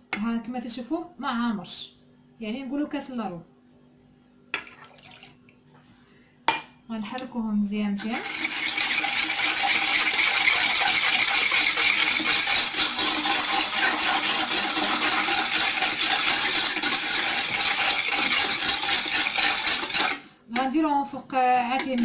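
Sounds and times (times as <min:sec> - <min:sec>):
spoon scraping and clinking in saucepan: 0:08.0 - 0:20.7, 0:21.7 - 0:22.0.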